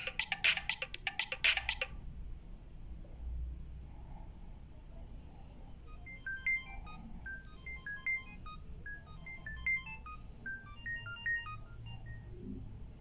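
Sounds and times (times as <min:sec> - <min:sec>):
beeping ringtone melody: 0:00.0 - 0:01.9, 0:05.9 - 0:12.3.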